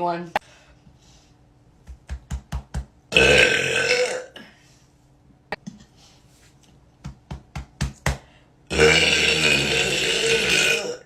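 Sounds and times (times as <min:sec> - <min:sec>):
woman burping: 0:03.1 - 0:04.5, 0:08.7 - 0:11.0.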